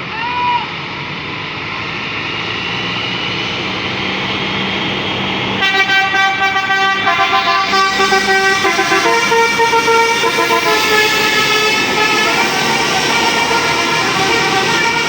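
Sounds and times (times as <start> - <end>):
bus noise: 0.0 - 15.0
musical bus horn playing a tune: 4.6 - 15.0.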